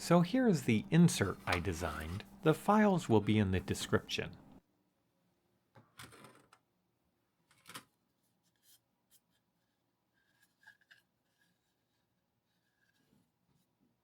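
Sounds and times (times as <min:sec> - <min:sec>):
plastic parts rubbing and scraping: 0:01.2 - 0:02.4.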